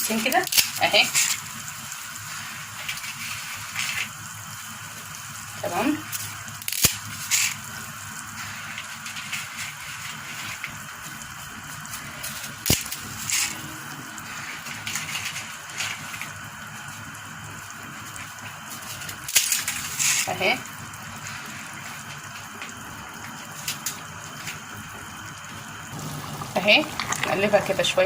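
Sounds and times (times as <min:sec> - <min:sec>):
water boiling and bubbling: 0:00.0 - 0:28.0.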